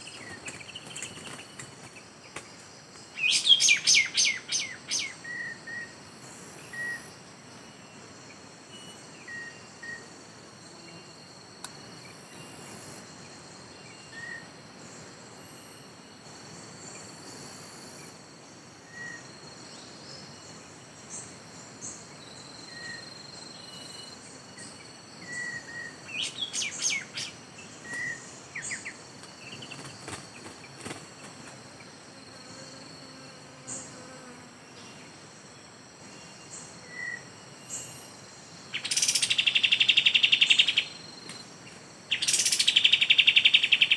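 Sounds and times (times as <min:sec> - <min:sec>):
sweeping bird calls: 0:03.2 - 0:05.9, 0:25.2 - 0:31.0.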